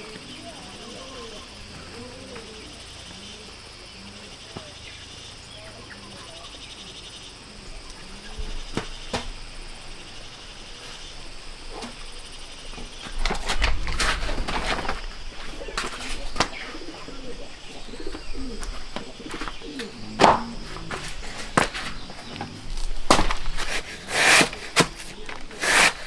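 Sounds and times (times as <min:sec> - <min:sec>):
insects trilling: 0:00.0 - 0:26.0
knocks and rustling: 0:11.7 - 0:16.7, 0:18.0 - 0:26.0.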